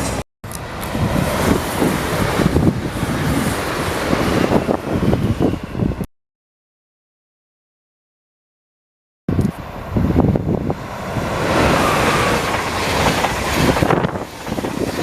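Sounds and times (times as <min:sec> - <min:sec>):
wind buffeting microphone: 0:00.5 - 0:06.1, 0:09.3 - 0:15.0.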